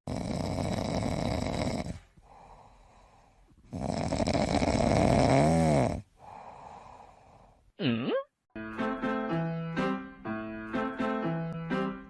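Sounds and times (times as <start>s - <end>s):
loud rasping snore: 0.1s - 3.0s, 3.6s - 7.2s
quiet breathing: 0.5s - 5.0s, 5.6s - 7.8s.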